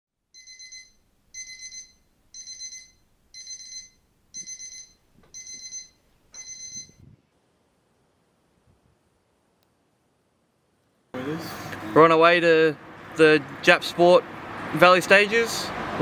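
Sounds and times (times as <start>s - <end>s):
electronic alarm beeping: 0.4s - 7.0s.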